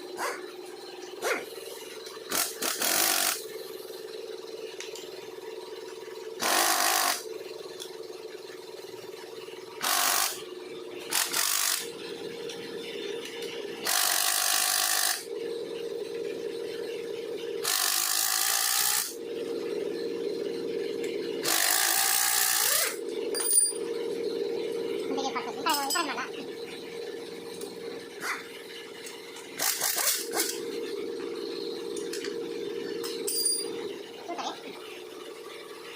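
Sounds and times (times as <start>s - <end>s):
steady background hum: 0.0s - 35.9s
power tool bursts: 2.3s - 3.4s, 6.4s - 7.2s, 9.8s - 10.4s, 11.1s - 11.9s, 13.8s - 15.2s, 17.6s - 19.2s, 21.4s - 23.0s, 29.6s - 30.6s.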